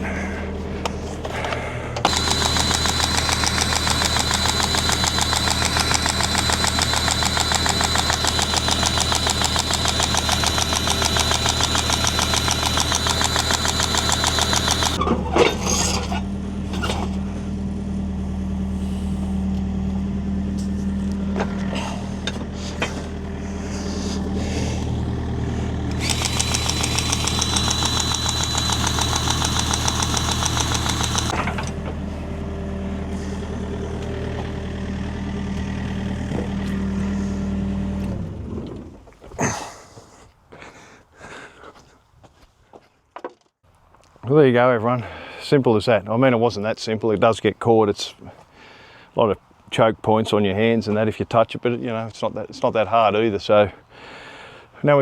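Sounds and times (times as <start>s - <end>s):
excavator diesel engine running: 1.3s - 15.0s, 23.0s - 36.6s
high-pitched hydraulic whine: 2.0s - 15.0s, 25.9s - 31.4s.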